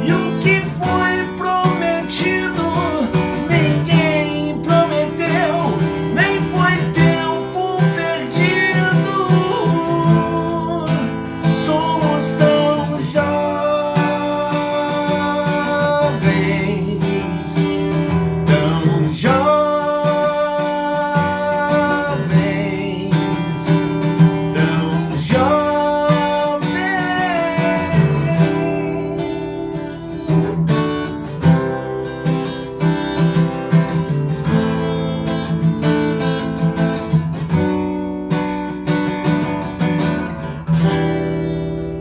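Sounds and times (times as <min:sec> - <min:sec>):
acoustic guitar strummed: 0:00.0 - 0:42.0.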